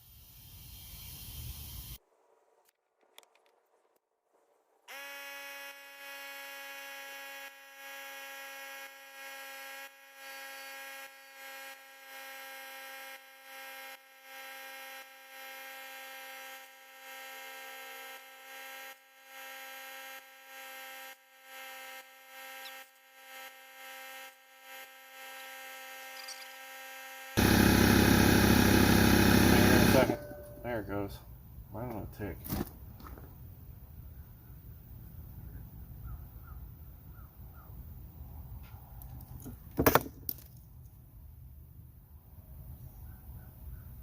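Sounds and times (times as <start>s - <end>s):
tire inflator humming: 4.9s - 30.8s.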